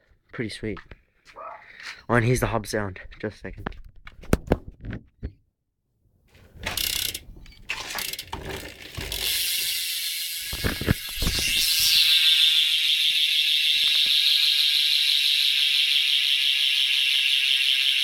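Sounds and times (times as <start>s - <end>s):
bike hub ratcheting buzz: 6.6s - 18.0s.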